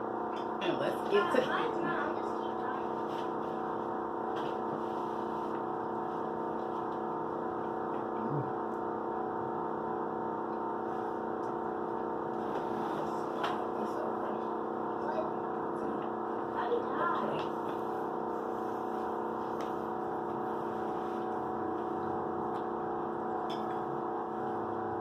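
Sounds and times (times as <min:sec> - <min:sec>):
steady background hum: 0:00.0 - 0:25.0.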